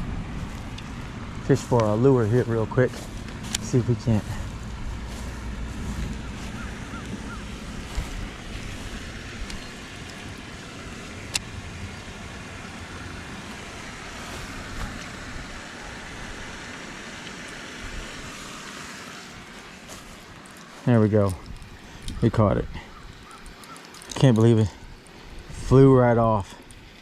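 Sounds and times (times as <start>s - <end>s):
low rumble: 0.0s - 16.6s
wind buffeting microphone: 0.0s - 17.1s, 21.0s - 23.6s.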